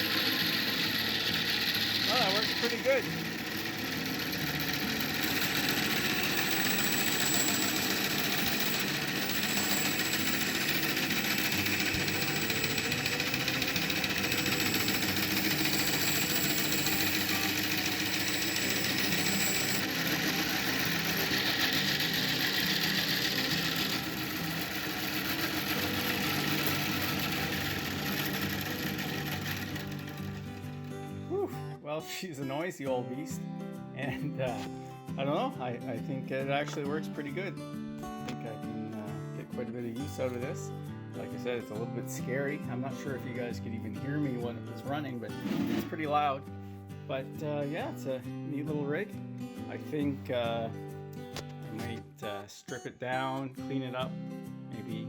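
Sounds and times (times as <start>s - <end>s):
bandsaw running: 0.0s - 31.3s, 45.4s - 46.2s.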